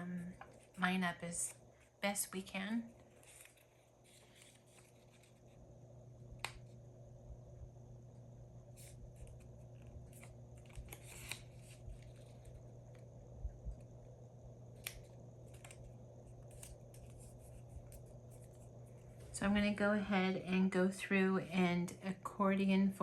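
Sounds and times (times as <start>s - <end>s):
paper rustling and crinkling: 2.9s - 5.6s, 8.8s - 13.0s, 14.8s - 19.3s.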